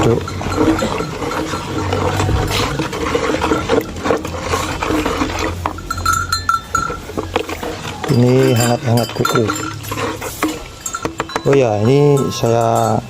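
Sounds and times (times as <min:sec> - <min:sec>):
knocks and scrapes: 0:00.0 - 0:13.0
stirring in a bucket: 0:00.0 - 0:13.0.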